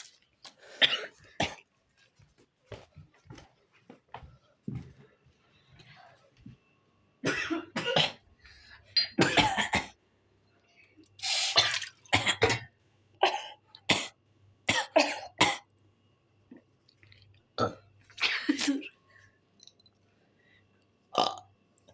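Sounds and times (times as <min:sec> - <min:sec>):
person coughing: 0:00.7 - 0:01.6, 0:07.2 - 0:08.2, 0:09.0 - 0:10.0, 0:11.5 - 0:15.7, 0:18.2 - 0:18.9.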